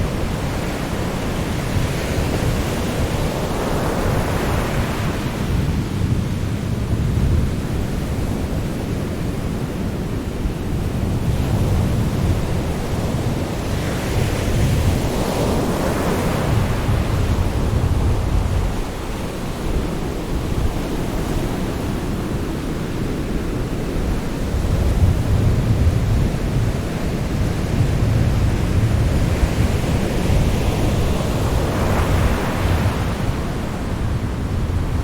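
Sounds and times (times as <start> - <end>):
waves rumbling: 14.2 - 35.0.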